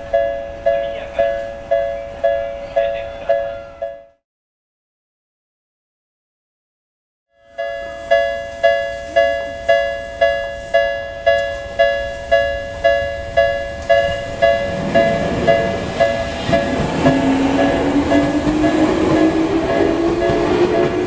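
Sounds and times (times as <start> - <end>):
rising train whine: 0.0 - 4.2, 7.4 - 21.0
level crossing alarm ringing: 7.4 - 21.0
train rumble: 8.0 - 21.0.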